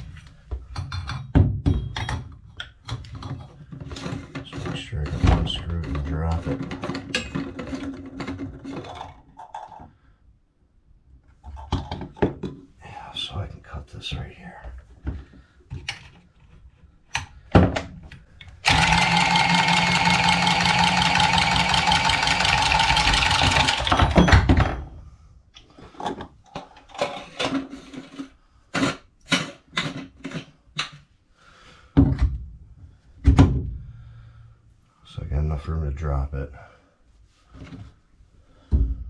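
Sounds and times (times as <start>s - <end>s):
knocks and clicks of tools: 17.1s - 24.8s
power saw cutting pipe: 18.6s - 24.2s.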